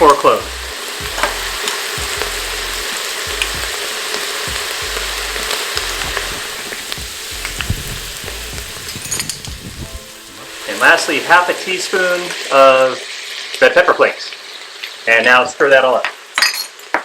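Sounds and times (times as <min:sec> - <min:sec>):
meat sizzling in a pot: 0:00.0 - 0:17.0.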